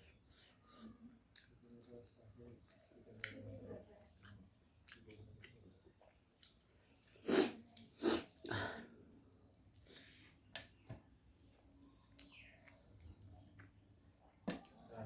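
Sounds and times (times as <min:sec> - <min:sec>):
person chewing: 0:00.8 - 0:08.5, 0:11.7 - 0:13.9.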